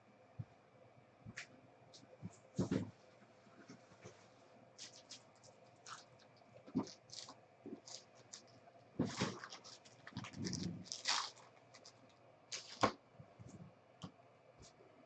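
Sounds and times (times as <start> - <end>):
cards and plastic sleeves rustling: 4.8 - 13.0.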